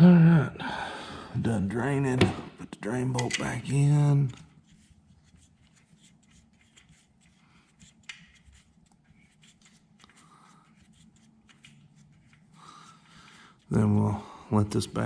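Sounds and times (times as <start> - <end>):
metal clicks and scraping: 2.9 - 4.5.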